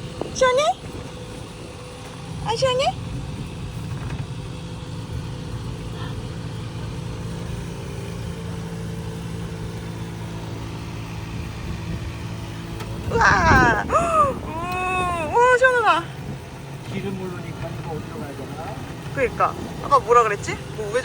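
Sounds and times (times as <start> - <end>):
electric cart hum: 0.0 - 21.0
wheels rolling: 0.0 - 21.0.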